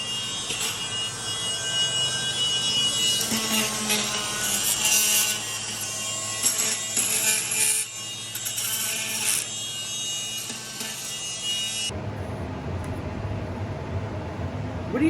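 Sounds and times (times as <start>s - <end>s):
power sander motor whine: 0.0s - 4.8s.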